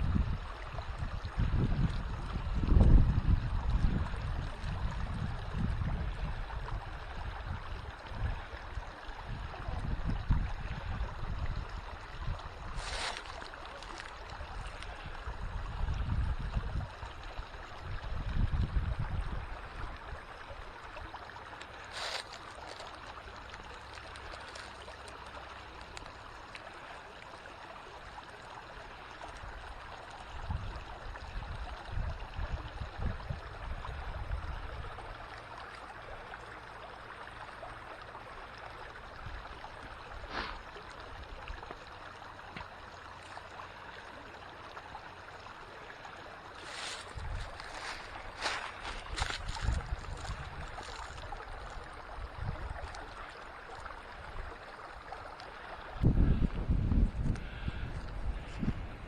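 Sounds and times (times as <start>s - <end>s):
wind rumbling on microphone: 0.0s - 20.6s, 29.4s - 35.2s, 46.6s - 53.0s, 55.8s - 59.0s
creek trickling: 0.0s - 59.0s.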